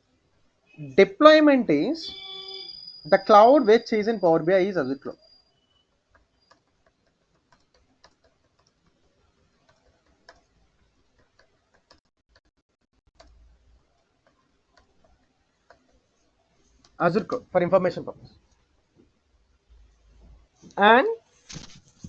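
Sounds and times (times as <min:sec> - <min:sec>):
faint irregular clicks: 0:05.1 - 0:17.0, 0:18.2 - 0:20.8.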